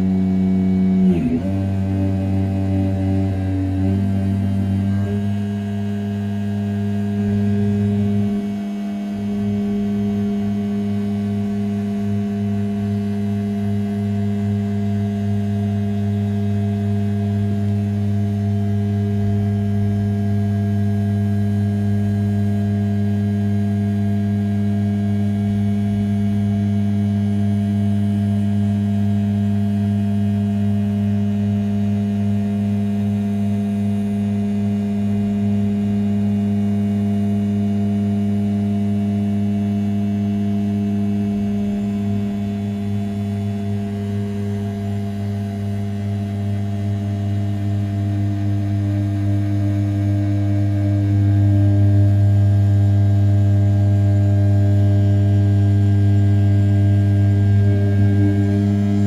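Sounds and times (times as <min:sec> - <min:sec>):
milling spindle humming: 0:00.0 - 0:13.2, 0:33.9 - 0:59.0.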